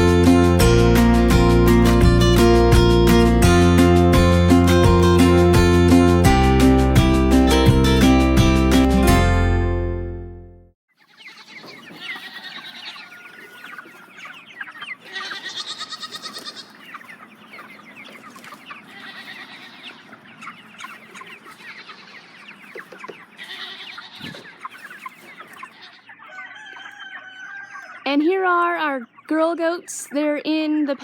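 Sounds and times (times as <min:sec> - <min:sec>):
chickens clucking and peeping: 0:10.9 - 0:31.0.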